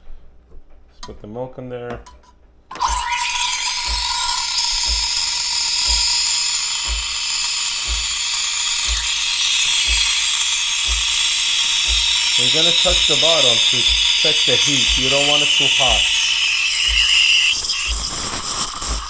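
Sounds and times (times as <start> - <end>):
steam wand hissing: 2.8 - 19.0
steam wand whistle: 2.8 - 19.0.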